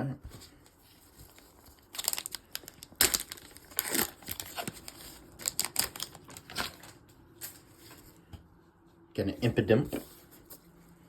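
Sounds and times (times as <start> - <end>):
foil wrapper tearing and crinkling: 1.2 - 6.9.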